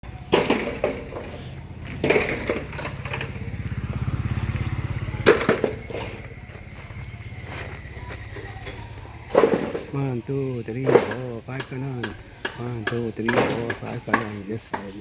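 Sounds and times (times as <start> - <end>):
small engine running: 0.1 - 9.9
loud clattering knocks: 0.3 - 3.6.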